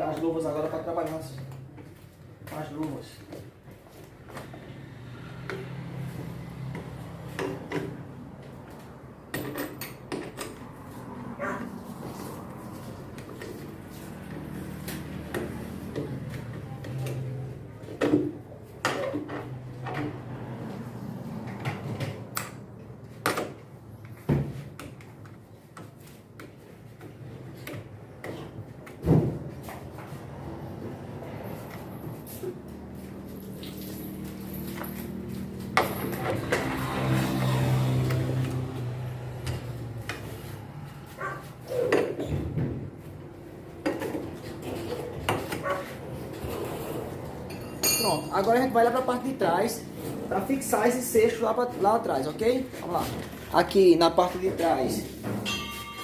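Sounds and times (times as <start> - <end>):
parts and tools knocking and clicking: 6.6 - 10.7
metallic clinks of tools and parts: 47.5 - 48.6, 55.4 - 56.0.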